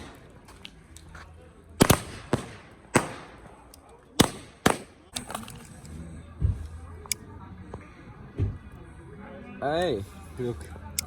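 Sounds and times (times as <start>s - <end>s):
firecrackers banging: 0.0s - 0.4s, 1.8s - 3.6s.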